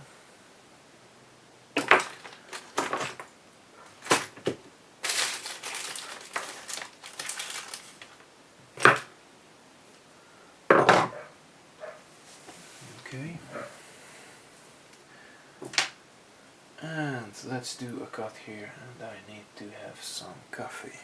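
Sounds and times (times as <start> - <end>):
clicks and knocks of small parts: 1.8 - 3.3
rustling and crinkling: 1.8 - 9.1, 11.9 - 13.8.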